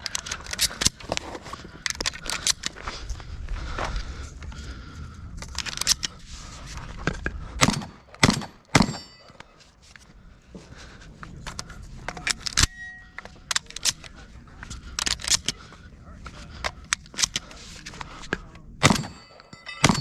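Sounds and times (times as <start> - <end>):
handling clicks and rattles: 0.0 - 2.8, 11.4 - 20.0.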